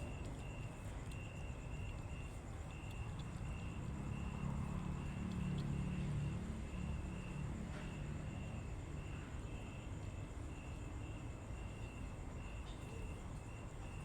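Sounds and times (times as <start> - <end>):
passing vehicle engine hum: 3.2 - 7.7.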